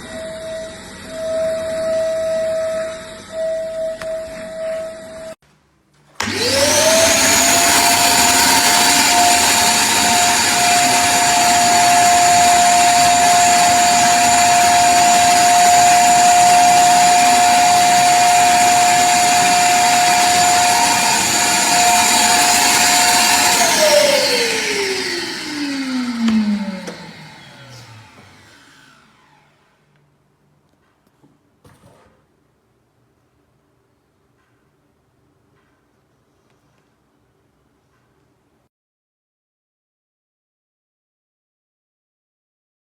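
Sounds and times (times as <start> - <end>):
vacuum cleaner motor whine: 0.0 - 5.2, 6.2 - 29.9.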